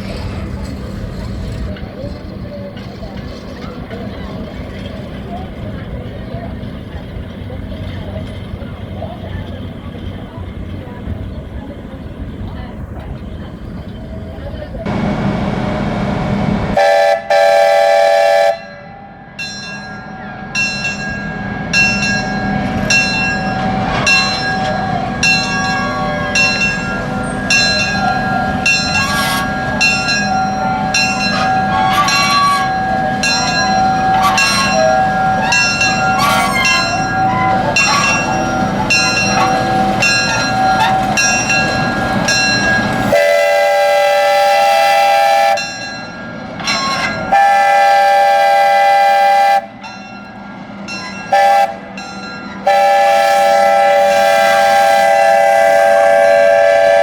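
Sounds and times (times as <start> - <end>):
train horn blasts: 16.8 - 18.8, 43.1 - 45.8, 47.3 - 49.8, 51.3 - 51.9, 52.6 - 57.0
bell-like ringing: 18.6 - 43.1, 45.6 - 47.4, 49.8 - 52.7.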